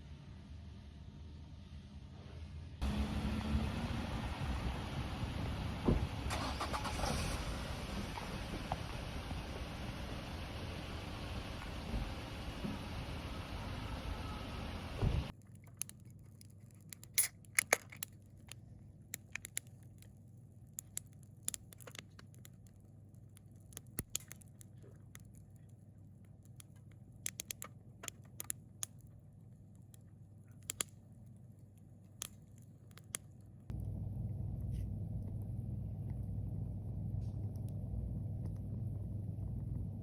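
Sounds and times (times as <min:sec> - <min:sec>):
sharp clicks and ticks: 0:15.4 - 0:29.2, 0:29.8 - 0:40.0
faint low hum: 0:18.1 - 0:40.0.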